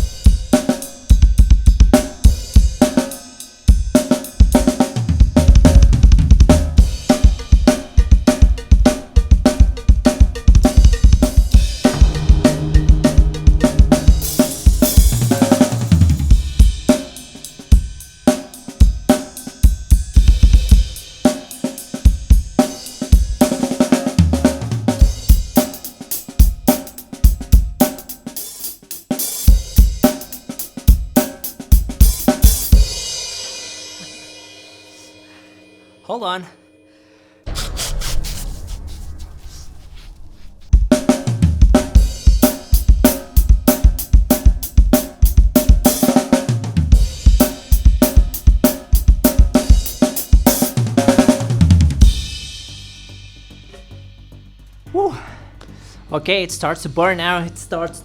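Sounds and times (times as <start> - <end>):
drum kit groove: 0.0 - 35.2, 37.5 - 57.5
cymbal crashes: 10.8 - 19.4
tom fills: 11.1 - 17.7.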